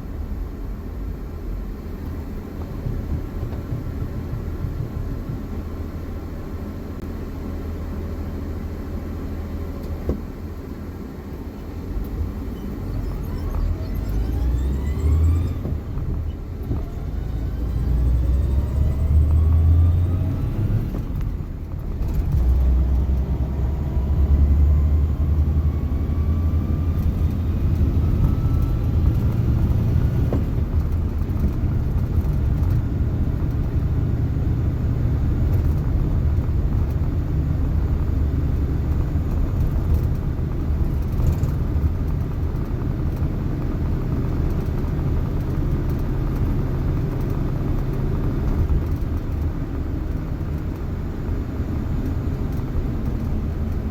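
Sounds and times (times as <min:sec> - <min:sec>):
vehicle engine rumble: 0:00.0 - 0:53.9
faint rising whine: 0:12.0 - 0:21.0.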